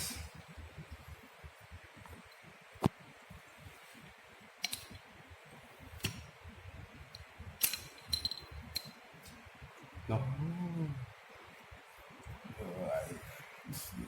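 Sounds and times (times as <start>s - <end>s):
metal parts and tools clinking: 7.6s - 9.0s.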